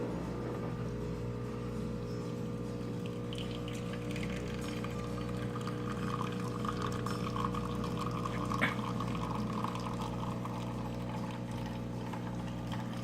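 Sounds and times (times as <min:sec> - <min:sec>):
coffee machine hum: 0:00.0 - 0:13.0
coffee pouring into cup: 0:02.8 - 0:13.0.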